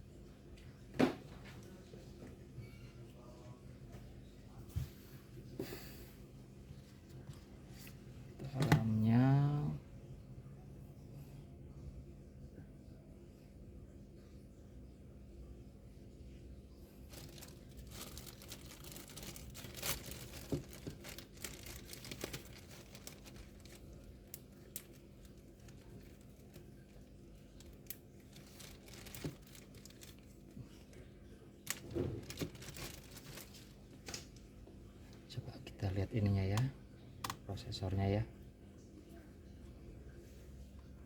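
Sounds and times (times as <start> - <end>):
plastic packaging crinkling and tearing: 17.1 - 34.4.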